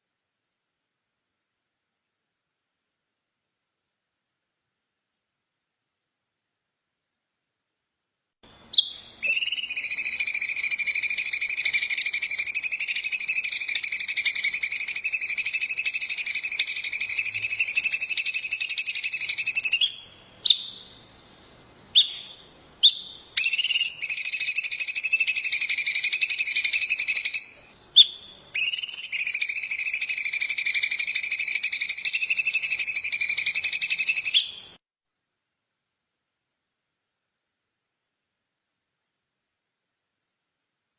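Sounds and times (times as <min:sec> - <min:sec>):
songbird trilling: 0:08.7 - 0:21.1, 0:21.9 - 0:34.7.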